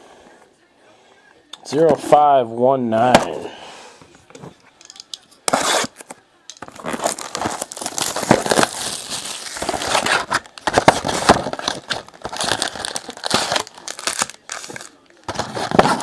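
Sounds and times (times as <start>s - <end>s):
cards being handled: 4.3s - 16.0s
card wrappers tearing and crinkling: 4.9s - 16.0s.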